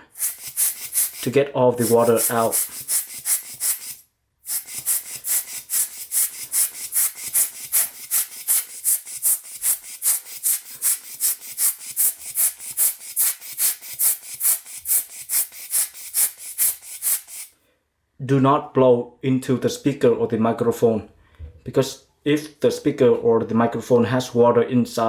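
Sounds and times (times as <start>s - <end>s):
rhythmic hissing puffs of air: 0.0s - 17.6s.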